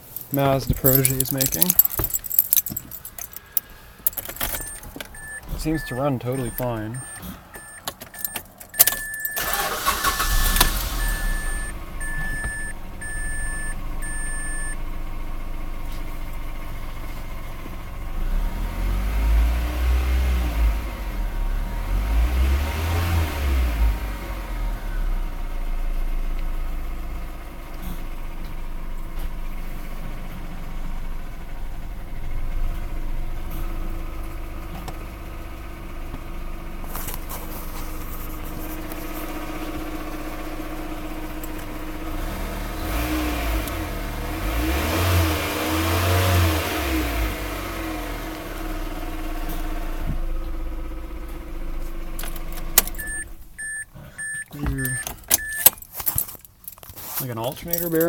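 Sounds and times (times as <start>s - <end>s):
car engine starting and running: 0.0s - 58.0s
engine revving: 4.1s - 14.8s, 18.1s - 25.2s, 41.9s - 50.1s
dashboard chime beeping: 4.4s - 10.2s, 10.9s - 14.8s, 53.0s - 55.7s.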